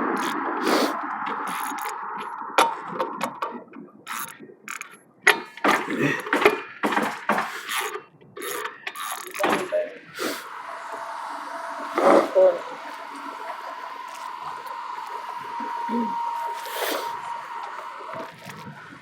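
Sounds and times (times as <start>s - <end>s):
hand tools clicking on metal: 0.2s - 2.0s, 4.1s - 10.4s.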